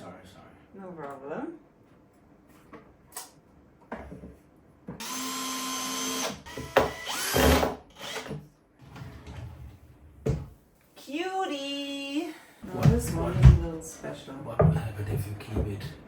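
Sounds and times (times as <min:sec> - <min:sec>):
cordless drill driving screws: 0:05.0 - 0:08.4.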